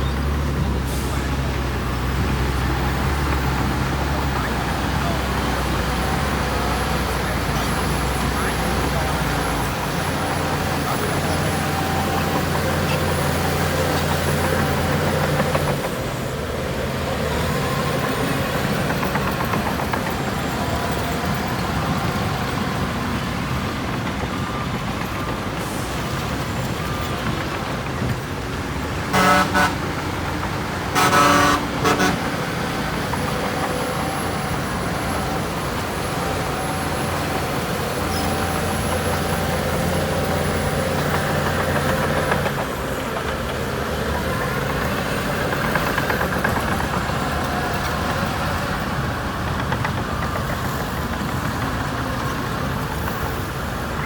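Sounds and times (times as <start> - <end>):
heavy diesel engines droning: 0.0 - 54.0
vehicle horn toots: 29.1 - 29.9, 30.9 - 32.4.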